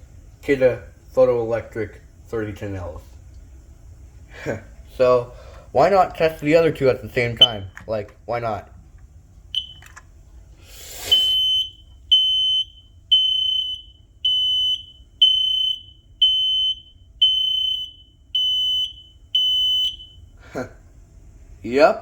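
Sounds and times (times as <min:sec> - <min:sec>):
smoke alarm beeps: 0:07.4 - 0:07.8, 0:09.5 - 0:10.0, 0:11.0 - 0:20.4.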